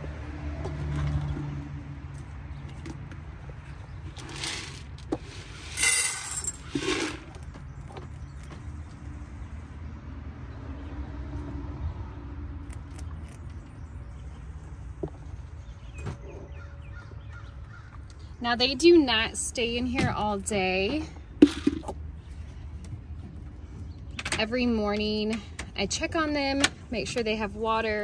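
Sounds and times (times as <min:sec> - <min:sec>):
low outdoor hum: 0:00.0 - 0:28.0
metallic rattles and rustles: 0:03.8 - 0:09.0, 0:21.4 - 0:23.5.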